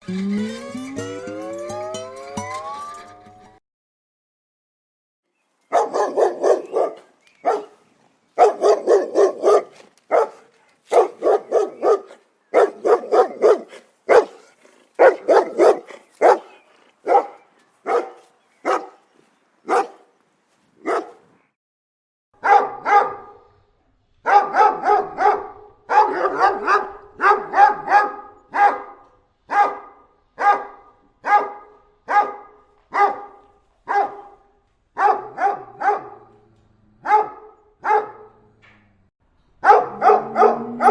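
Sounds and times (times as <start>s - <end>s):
dogs barking: 5.7s - 7.8s, 8.4s - 19.0s, 19.7s - 20.1s, 20.8s - 21.2s, 22.4s - 23.6s, 24.2s - 38.6s, 39.6s - 40.9s
higher tonal dog bark: 5.7s - 7.8s, 8.4s - 19.0s, 19.7s - 20.1s, 20.8s - 21.2s, 22.4s - 23.6s, 24.2s - 38.6s, 39.6s - 40.9s.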